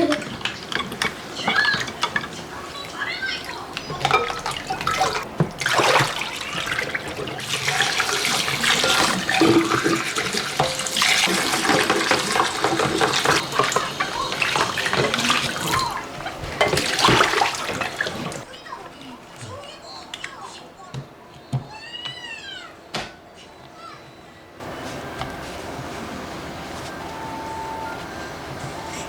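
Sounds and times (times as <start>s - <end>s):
tap water running into sink: 0.0s - 18.5s.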